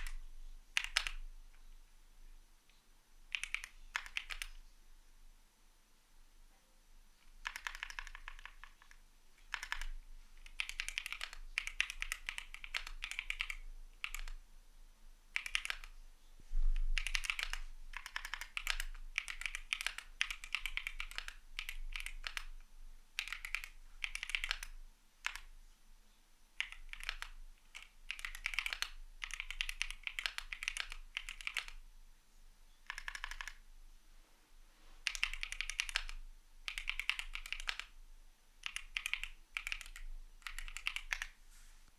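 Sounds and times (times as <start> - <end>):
mechanical keyboard typing: 0.8 - 1.2, 3.3 - 4.6, 7.2 - 14.4, 15.3 - 16.0, 17.0 - 22.6, 23.2 - 25.5, 26.6 - 31.8, 32.8 - 33.6, 35.0 - 38.0, 38.6 - 41.4.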